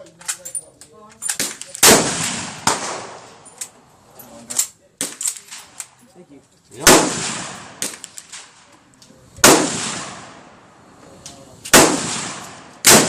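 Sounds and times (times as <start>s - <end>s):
gunshots echoing: 1.4s - 3.4s, 6.8s - 8.7s, 9.4s - 10.6s, 11.7s - 13.0s
faint cracks: 7.8s - 9.2s.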